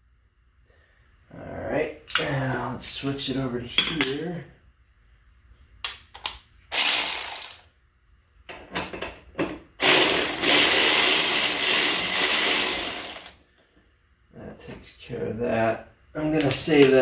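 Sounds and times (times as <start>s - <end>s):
power tool spinning bolt: 6.7s - 7.6s, 9.8s - 13.4s.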